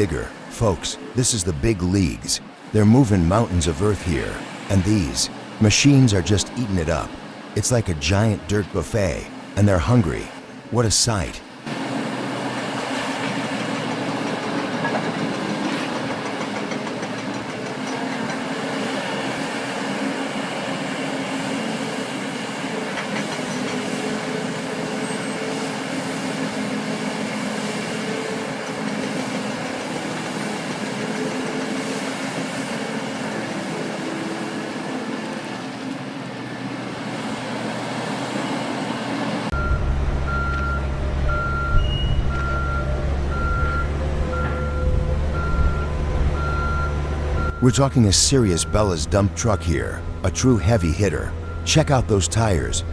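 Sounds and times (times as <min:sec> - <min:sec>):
diesel engine drone: 0:00.0 - 0:52.9
sustained hum tones: 0:39.5 - 0:52.9.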